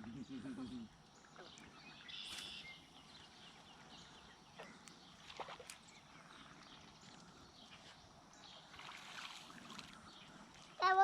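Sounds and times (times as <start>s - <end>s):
faint chirps and ticks: 0.1s - 8.8s.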